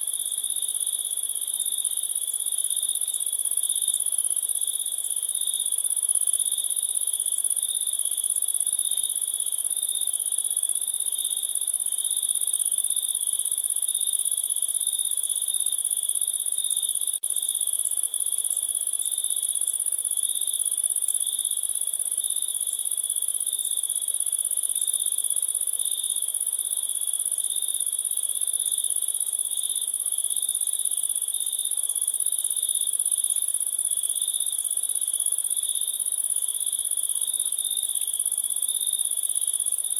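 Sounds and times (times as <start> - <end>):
crickets chirping: 13.9 - 39.9.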